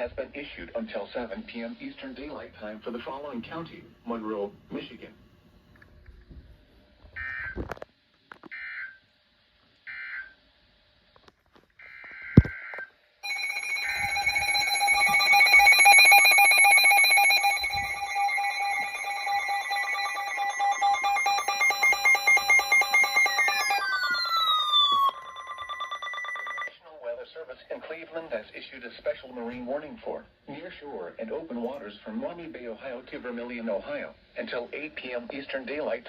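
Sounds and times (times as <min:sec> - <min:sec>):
pulsing multi-tone alert alarm: 0:12.7 - 0:26.7
buzzing digital data bursts: 0:13.3 - 0:26.7.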